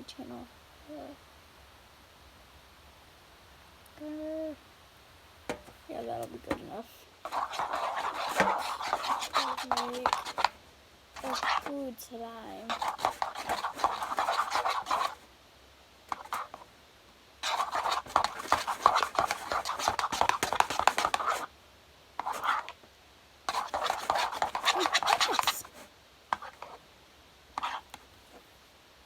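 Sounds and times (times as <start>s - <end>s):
spoon scraping in bowl: 7.3s - 10.5s, 11.2s - 11.7s, 12.7s - 15.2s, 17.4s - 21.5s, 22.2s - 22.7s, 23.5s - 25.8s, 27.6s - 27.9s.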